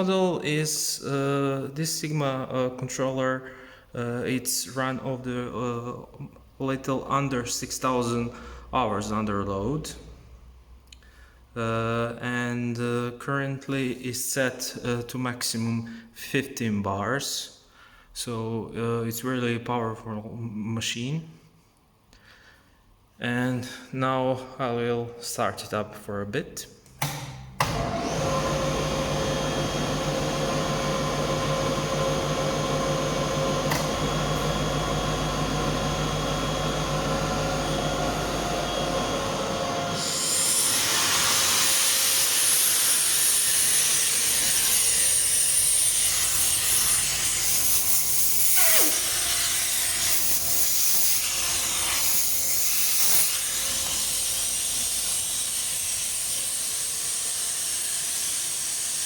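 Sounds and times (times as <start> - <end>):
air compressor hum and whine: 27.0 - 59.0.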